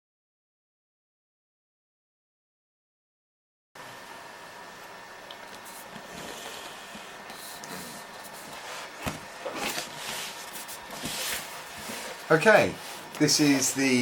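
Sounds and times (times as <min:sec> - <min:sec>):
room hiss: 0:03.8 - 0:14.0
rustling and scraping: 0:05.6 - 0:13.9.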